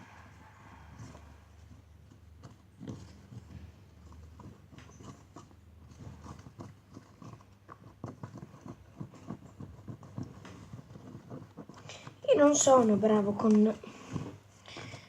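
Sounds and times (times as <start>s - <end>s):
spoon stirring thick slime: 0.0s - 15.0s.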